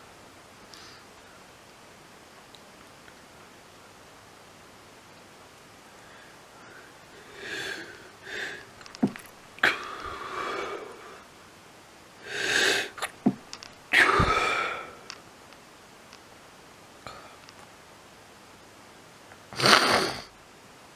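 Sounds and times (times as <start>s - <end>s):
drawn-in breaths: 5.9s - 9.0s, 9.6s - 11.3s, 12.2s - 13.0s
person sneezing: 13.9s - 14.9s, 19.6s - 20.3s.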